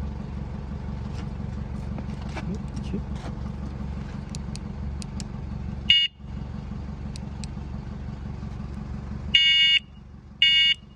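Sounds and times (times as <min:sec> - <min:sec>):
short electronic beeps: 0:09.4 - 0:10.8.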